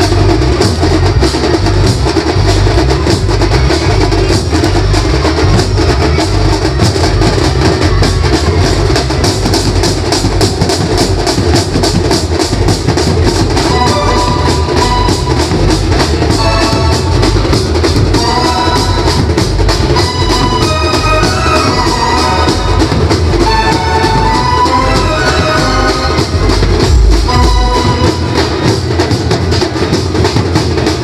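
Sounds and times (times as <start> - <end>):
fast dense drumming: 0.0 - 31.0
high melodic line: 13.2 - 29.2.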